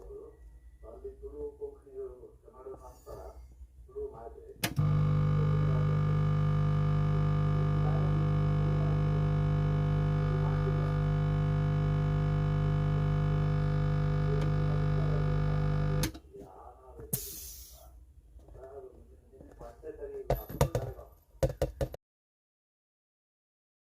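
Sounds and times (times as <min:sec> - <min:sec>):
electric air compressor humming: 0:04.7 - 0:16.1.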